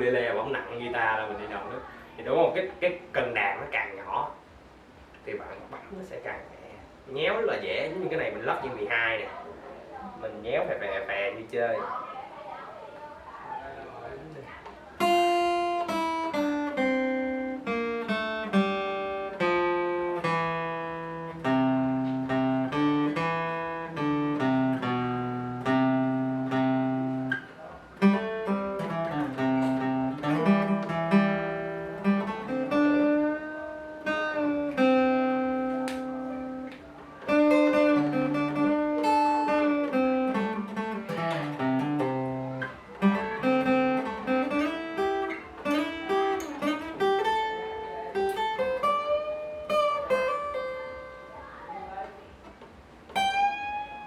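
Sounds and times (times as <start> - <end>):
fingerstyle acoustic guitar: 14.5 - 54.0.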